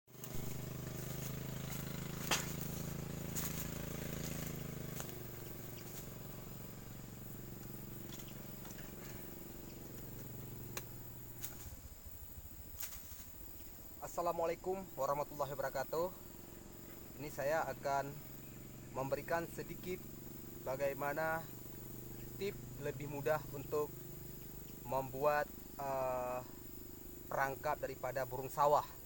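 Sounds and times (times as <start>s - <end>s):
engine hum: 0.1s - 29.0s
faint clicks: 10.7s - 11.6s.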